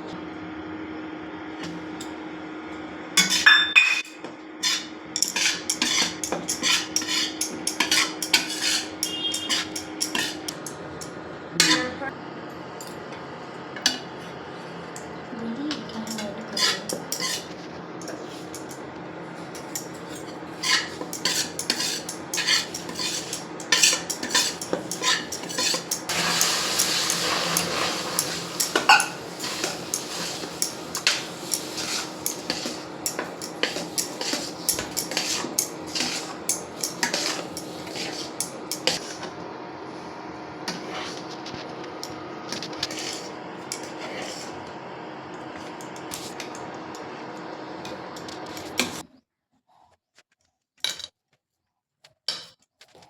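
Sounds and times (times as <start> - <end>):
spoon scraping pot: 3.2 - 4.0, 4.6 - 11.9, 16.0 - 18.8, 19.4 - 39.3, 40.7 - 44.6
metal spoon clinking on cookware: 3.2 - 11.9, 19.6 - 39.1.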